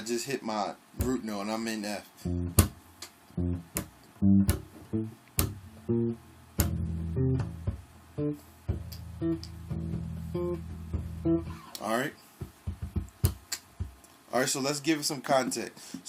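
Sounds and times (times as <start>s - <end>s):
plucked bass notes: 2.3s - 11.8s
muted bass string clicks: 2.4s - 7.8s, 8.7s - 11.8s.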